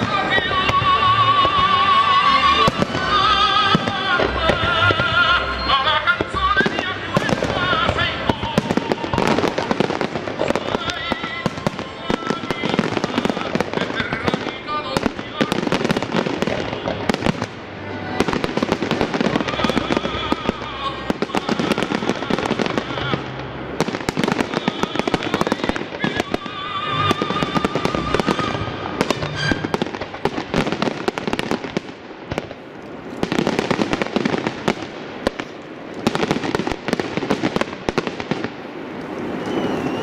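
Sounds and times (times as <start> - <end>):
music: 0.0 - 9.3, 17.7 - 30.3
fireworks bursting and crackling: 0.0 - 40.0.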